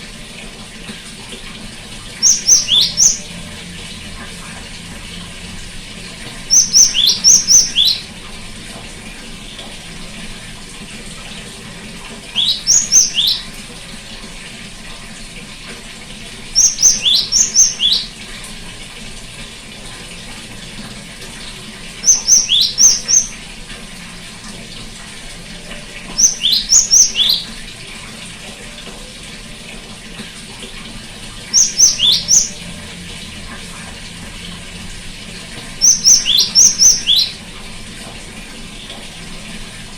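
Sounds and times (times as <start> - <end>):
great tit song: 2.1 - 4.8, 6.4 - 8.2, 12.2 - 13.6, 16.6 - 18.2, 22.0 - 23.5, 25.6 - 27.6, 31.5 - 34.9, 35.6 - 37.4.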